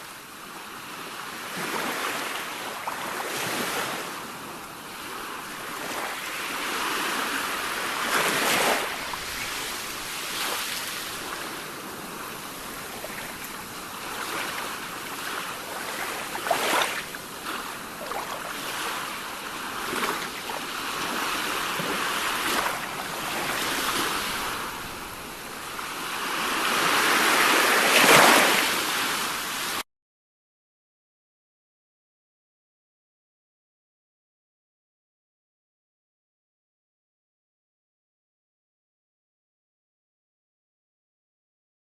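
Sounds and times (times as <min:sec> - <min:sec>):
sea waves washing onto shore: 0:00.1 - 0:29.8.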